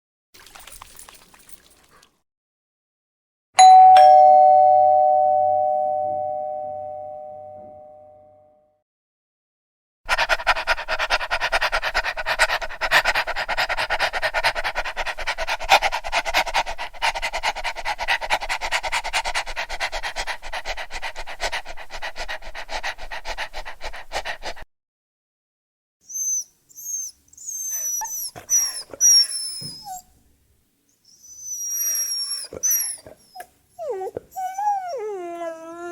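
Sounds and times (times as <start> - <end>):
dog pulsing sound: 10.1 - 24.6
dog whimpering: 26.1 - 30.2, 31.1 - 35.9.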